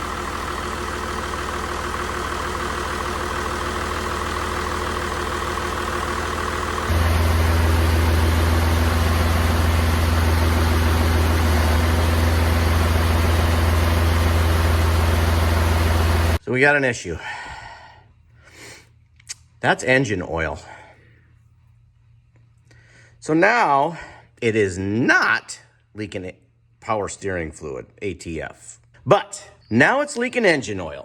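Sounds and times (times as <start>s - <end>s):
diesel engine idling: 0.0s - 16.4s.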